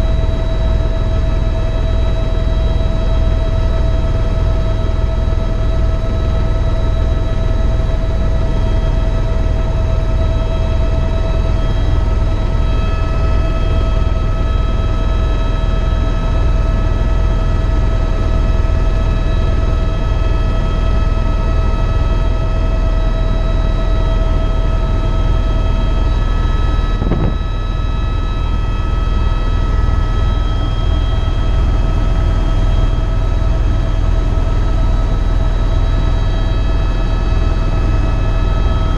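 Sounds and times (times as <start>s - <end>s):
helicopter droning: 0.0s - 38.9s
whining tones: 24.1s - 31.3s.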